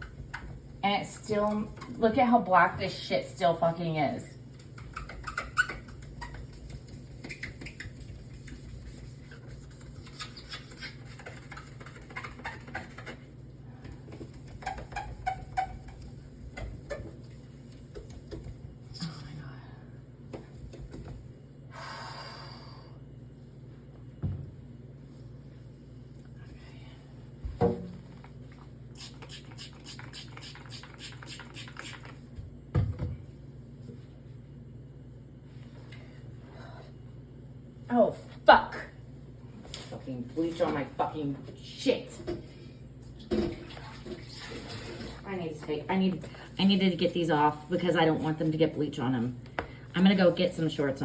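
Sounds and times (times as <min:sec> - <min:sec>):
scrubbing on plastic: 0:04.6 - 0:13.4
steady low hum: 0:15.7 - 0:29.0, 0:32.1 - 0:51.0
scrubbing strokes: 0:43.7 - 0:45.4.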